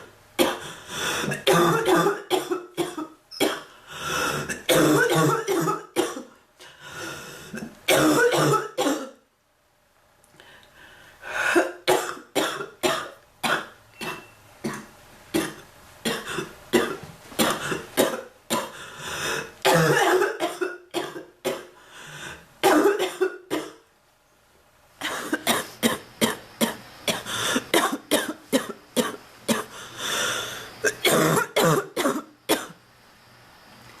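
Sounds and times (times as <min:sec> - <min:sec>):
woman coughing: 0:00.4 - 0:00.7, 0:01.3 - 0:03.7, 0:04.5 - 0:06.3, 0:07.9 - 0:09.2, 0:11.5 - 0:18.8, 0:19.7 - 0:21.7, 0:22.6 - 0:23.8, 0:25.0 - 0:29.7, 0:30.8 - 0:32.8.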